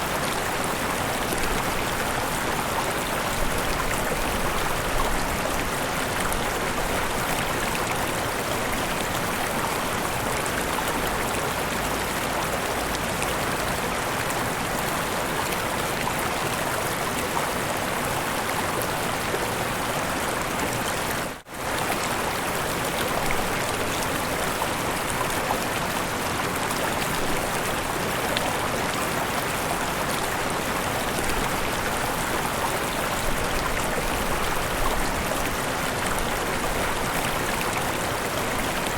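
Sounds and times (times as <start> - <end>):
river and waterfalls rushing: 0.0 - 38.9.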